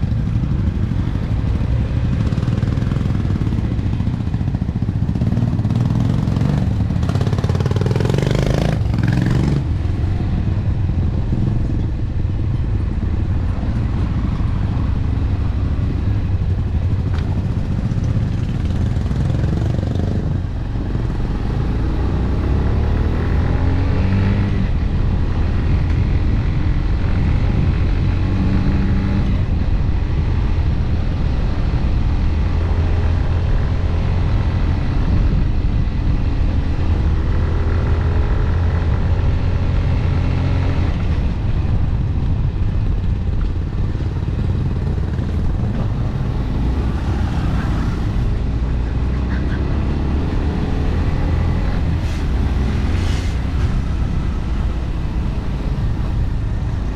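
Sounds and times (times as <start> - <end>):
motorcycle engine running: 0.0 - 32.1, 33.2 - 49.6
road noise: 0.0 - 56.9
wind noise: 0.0 - 56.9.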